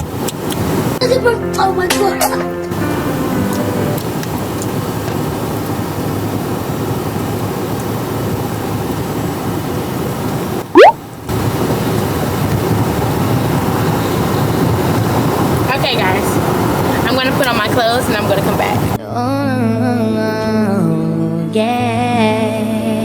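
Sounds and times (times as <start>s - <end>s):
quick rising whistle: 10.8s - 11.0s.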